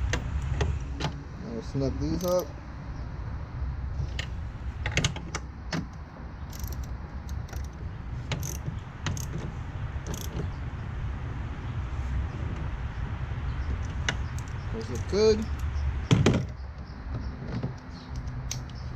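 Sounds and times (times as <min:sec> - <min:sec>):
ratchet clicking: 0:02.2 - 0:02.5, 0:06.5 - 0:09.4, 0:10.1 - 0:10.5, 0:13.8 - 0:15.8, 0:18.1 - 0:18.9.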